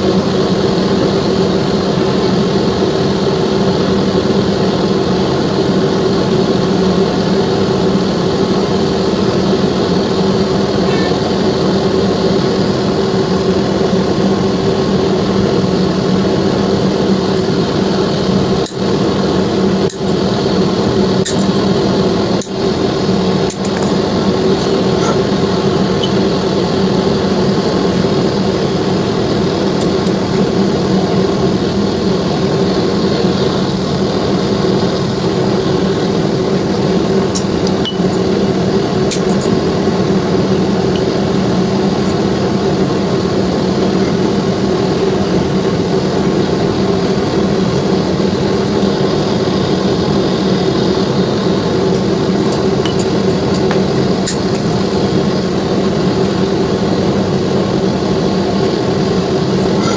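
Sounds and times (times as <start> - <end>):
loud machine hum: 0.0 - 59.9.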